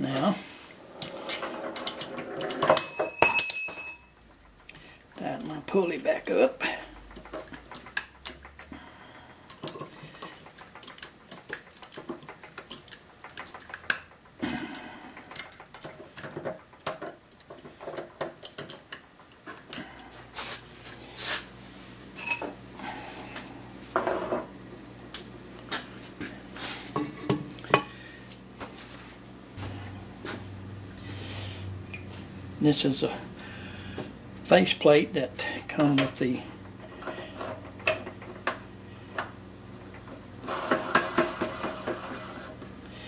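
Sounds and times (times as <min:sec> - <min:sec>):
metal tools clinking and tapping: 0:01.2 - 0:04.5, 0:15.2 - 0:19.9, 0:22.2 - 0:22.6
low steady hum: 0:12.7 - 0:40.5.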